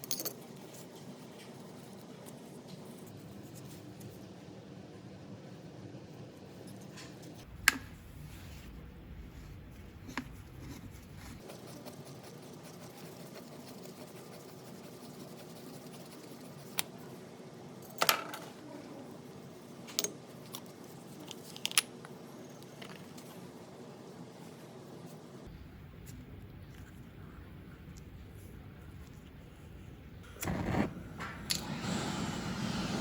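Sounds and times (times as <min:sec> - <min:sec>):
metal parts and tools clinking: 0:00.0 - 0:00.6.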